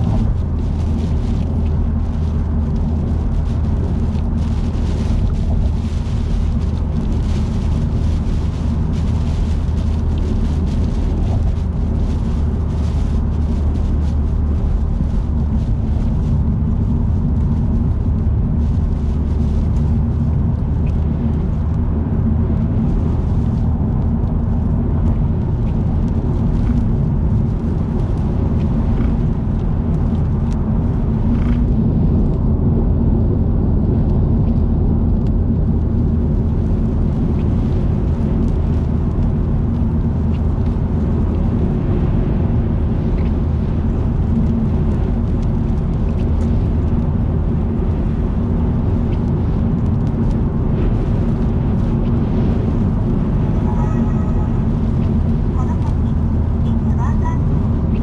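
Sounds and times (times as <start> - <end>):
road and engine hum: 0.0 - 58.0.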